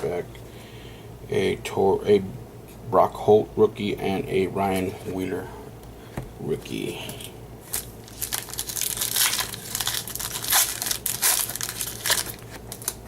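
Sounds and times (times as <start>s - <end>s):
wrapper crinkling: 7.6s - 13.0s.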